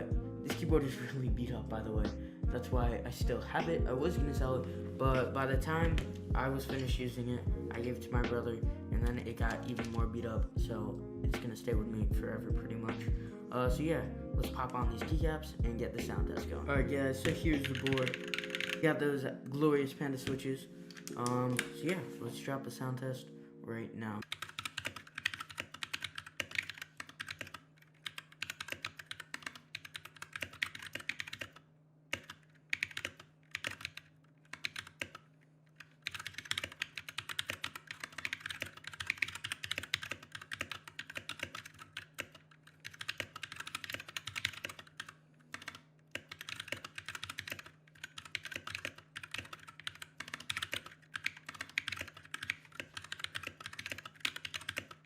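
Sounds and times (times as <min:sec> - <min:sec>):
mechanical keyboard typing: 0:09.0 - 0:10.3, 0:17.2 - 0:19.0, 0:24.2 - 0:55.0.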